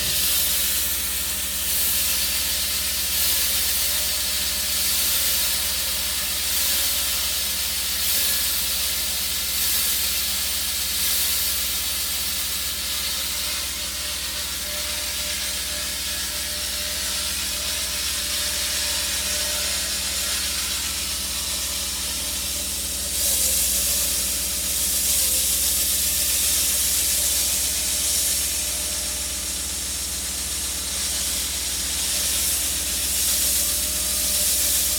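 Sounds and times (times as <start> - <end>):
concrete saw cutting concrete: 0.0 - 34.9.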